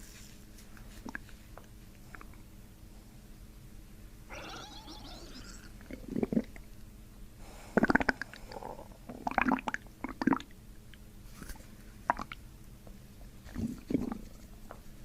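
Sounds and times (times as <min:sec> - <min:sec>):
stomach gurgling: 0:04.3 - 0:06.6, 0:07.8 - 0:10.5, 0:13.4 - 0:14.3.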